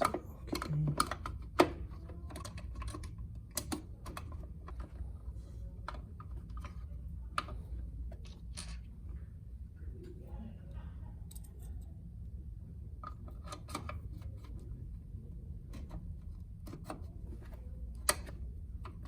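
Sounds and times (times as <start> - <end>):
plastic console clicks and knocks: 0.0 - 5.1, 13.0 - 14.7, 15.7 - 19.0.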